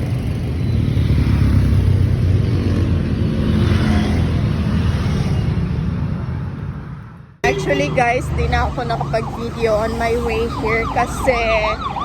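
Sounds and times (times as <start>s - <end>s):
road noise: 0.0s - 12.0s.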